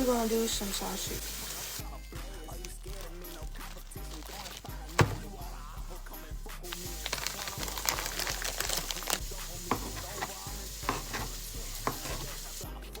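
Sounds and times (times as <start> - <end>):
food sizzling in a pan: 0.0 - 12.8
utensil scraping a pan: 3.0 - 12.6.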